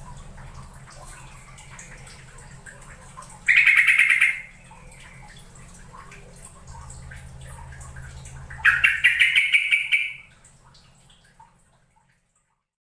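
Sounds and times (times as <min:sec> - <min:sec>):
low steady hum: 0:00.0 - 0:12.6
bird chattering: 0:03.5 - 0:04.6, 0:08.6 - 0:10.2.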